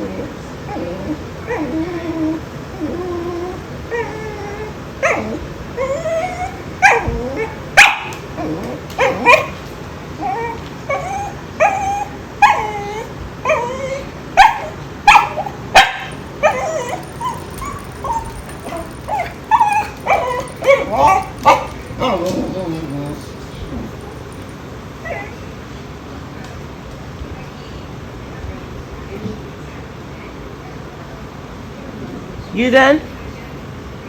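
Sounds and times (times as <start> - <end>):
small dog whining and yipping: 0.7 - 9.5, 10.2 - 25.4.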